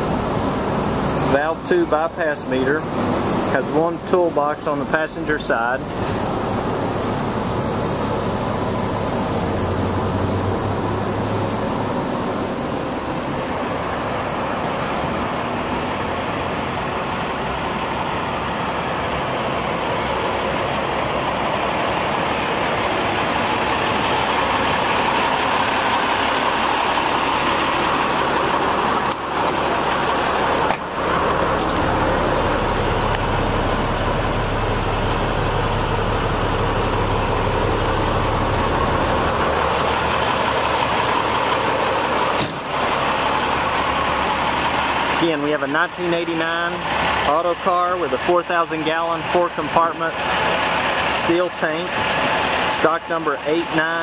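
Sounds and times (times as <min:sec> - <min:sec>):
diesel truck engine idling: 0:00.0 - 0:54.0.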